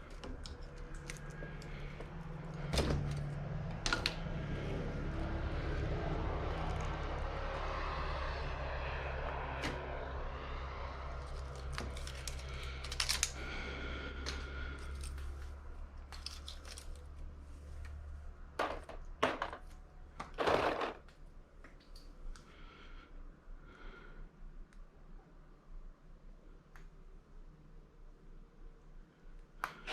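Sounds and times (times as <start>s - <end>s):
steady low hum: 0.0s - 16.2s.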